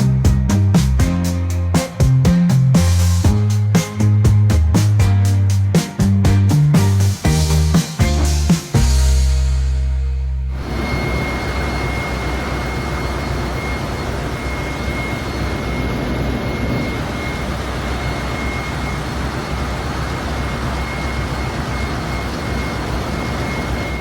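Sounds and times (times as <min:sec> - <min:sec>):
high-pitched whine: 0:10.4 - 0:24.0
ship machinery roaring: 0:10.5 - 0:24.0.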